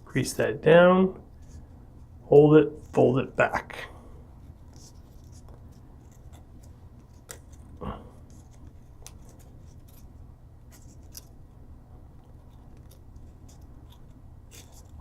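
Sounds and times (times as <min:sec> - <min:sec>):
paper being folded and creased: 0:04.4 - 0:11.5, 0:12.2 - 0:15.0
paper rustle: 0:04.5 - 0:11.4, 0:12.2 - 0:15.0.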